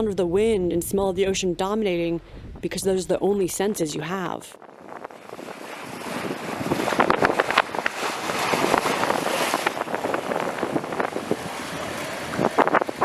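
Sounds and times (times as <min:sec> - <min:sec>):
wind buffeting microphone: 0:00.0 - 0:13.0
sea water splashing along hull: 0:04.6 - 0:13.0.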